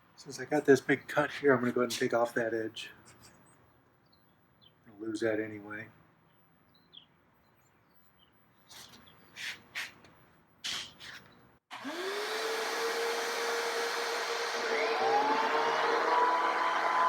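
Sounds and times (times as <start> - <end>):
electric motor whine: 11.7 - 17.0.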